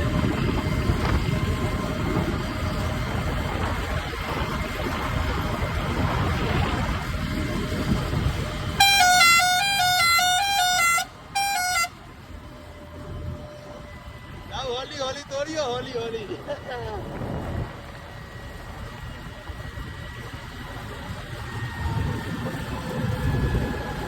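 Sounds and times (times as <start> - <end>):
vehicle engine rumbling: 0.0 - 24.0
musical vehicle horn: 8.5 - 12.9.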